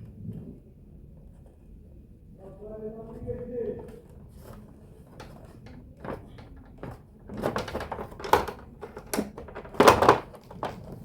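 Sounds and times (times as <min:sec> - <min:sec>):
clatter of handling a keyboard: 0:03.2 - 0:11.0.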